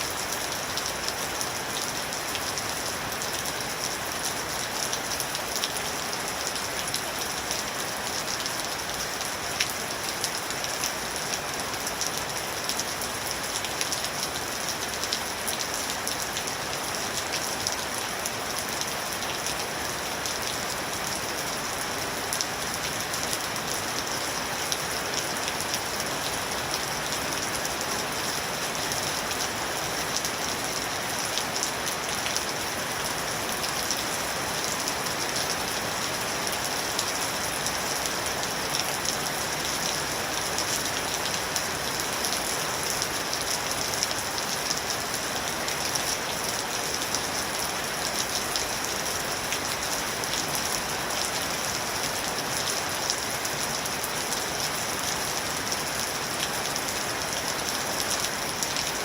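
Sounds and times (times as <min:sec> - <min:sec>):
hiss of rainfall: 0:00.0 - 0:59.0
raindrops ticking on a surface: 0:00.0 - 0:59.0.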